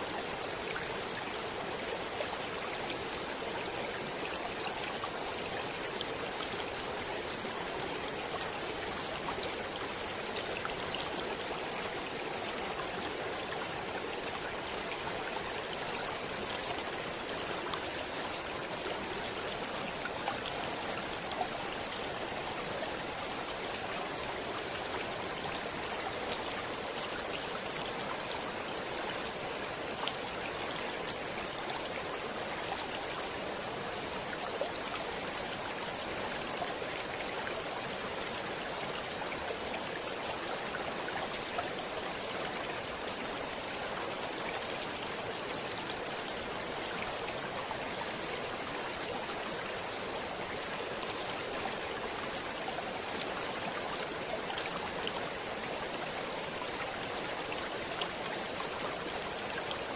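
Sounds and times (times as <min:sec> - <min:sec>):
stream water rushing: 0:00.0 - 0:59.9.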